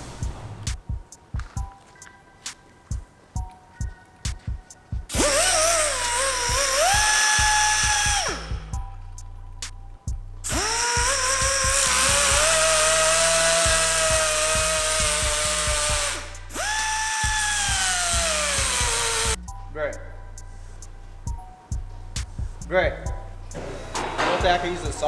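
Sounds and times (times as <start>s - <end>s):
power tool motor whining: 5.1s - 8.7s, 10.5s - 19.4s.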